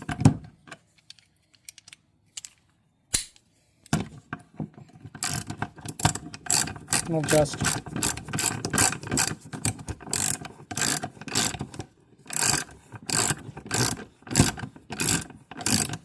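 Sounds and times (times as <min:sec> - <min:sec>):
ratchet wrench clicking: 0:05.2 - 0:09.4, 0:10.0 - 0:11.6, 0:12.3 - 0:16.0.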